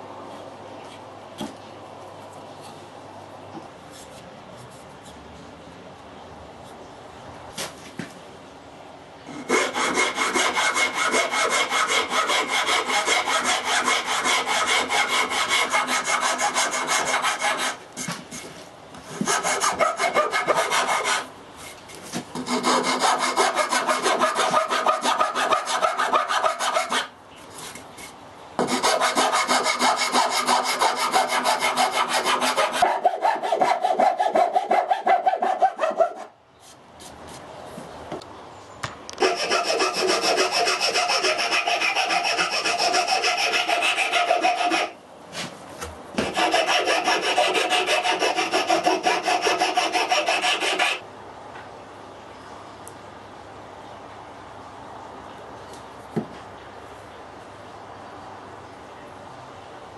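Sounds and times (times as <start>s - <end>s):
rubbing wood by hand: 9.4s - 18.5s, 19.1s - 21.2s, 22.4s - 27.1s, 28.6s - 36.3s, 39.2s - 45.5s, 46.2s - 51.0s.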